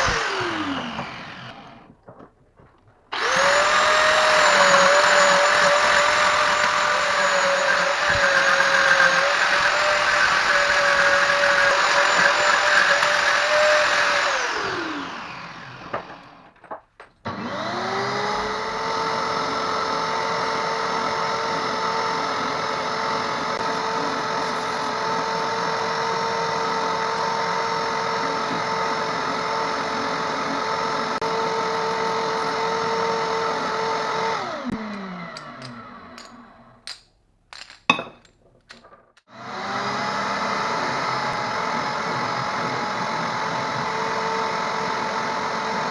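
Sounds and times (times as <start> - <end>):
power tool motor whining: 0.0 - 2.0, 3.1 - 16.6, 17.2 - 36.8.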